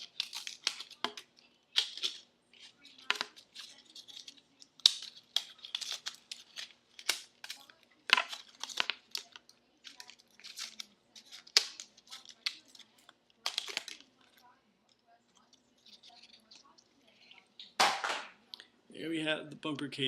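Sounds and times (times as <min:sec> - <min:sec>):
plastic packaging crinkling and tearing: 0:00.0 - 0:14.5
sharp plastic cracks: 0:04.1 - 0:12.8, 0:13.4 - 0:14.1, 0:17.6 - 0:18.4.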